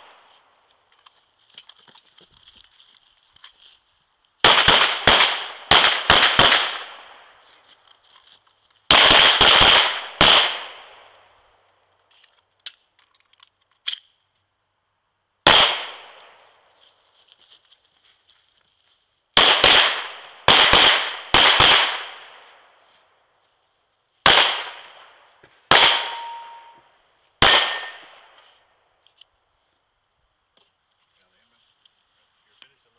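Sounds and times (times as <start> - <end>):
pistol shots: 4.4 - 7.2, 8.9 - 11.1, 15.5 - 16.3, 19.4 - 22.5, 24.2 - 26.8, 27.4 - 28.3.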